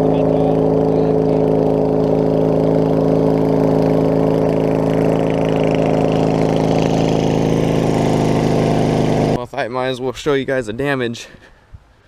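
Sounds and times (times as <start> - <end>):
lawn mower engine idling: 0.0 - 9.4.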